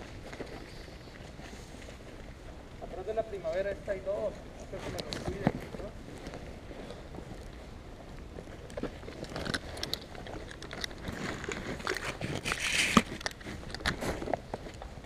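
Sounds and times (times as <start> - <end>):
crackles: 0.0 - 15.0
footsteps crunching over rough ground: 0.0 - 15.0.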